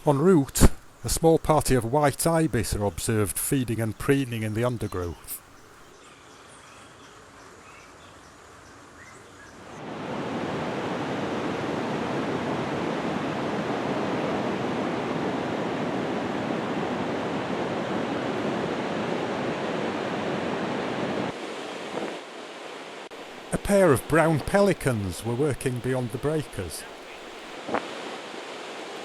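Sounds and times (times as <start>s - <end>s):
ocean waves breaking: 9.8s - 29.0s.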